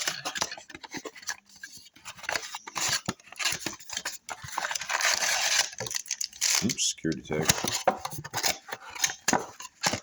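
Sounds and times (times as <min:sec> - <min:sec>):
packaging crinkling: 0:02.2 - 0:07.9.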